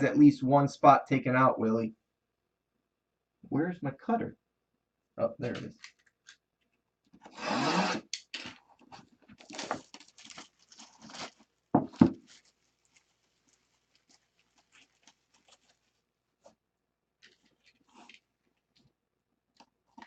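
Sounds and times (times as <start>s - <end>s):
plastic crinkling: 5.7s - 6.4s, 8.6s - 16.6s, 17.2s - 18.9s
shrink-wrap tearing: 9.3s - 16.0s.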